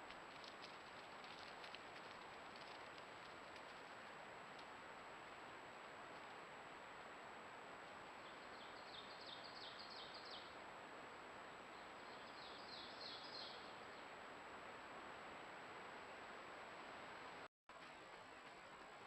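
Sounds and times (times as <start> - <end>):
faint steady hiss: 0.0 - 19.0
songbird singing: 8.1 - 10.6, 11.6 - 14.2.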